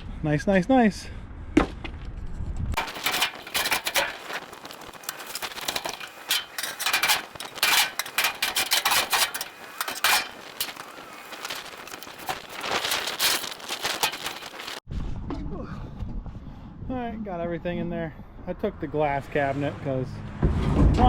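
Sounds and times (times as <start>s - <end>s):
scrap metal scraping and rattling: 2.8s - 14.8s.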